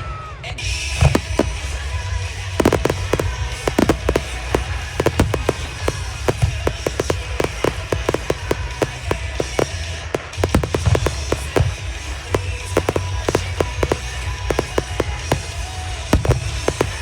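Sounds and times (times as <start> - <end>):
fireworks bangs and crackles: 0.6 - 17.0
music from loudspeakers: 2.5 - 9.6.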